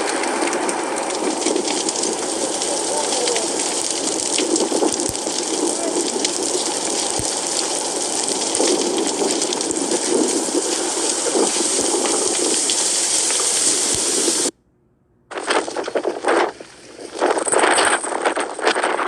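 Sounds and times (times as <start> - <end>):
choppy rushing noise: 15.3 - 19.0.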